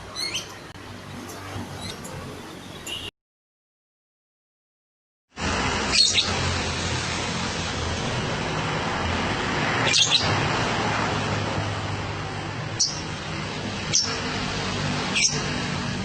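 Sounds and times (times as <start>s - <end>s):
bird chirping high: 0.0s - 0.6s, 5.9s - 6.4s, 9.8s - 10.4s, 12.8s - 13.1s, 13.9s - 14.2s, 15.1s - 15.5s.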